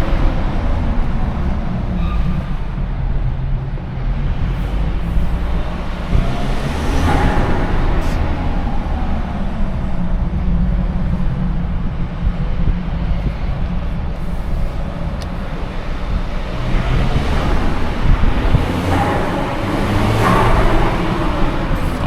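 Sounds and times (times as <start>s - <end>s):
car engine drone: 0.0s - 22.0s
rushing sound of speeding car: 0.0s - 22.0s.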